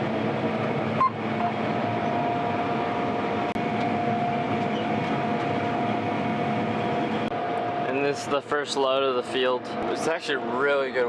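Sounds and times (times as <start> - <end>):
combine harvester running: 0.0 - 11.0.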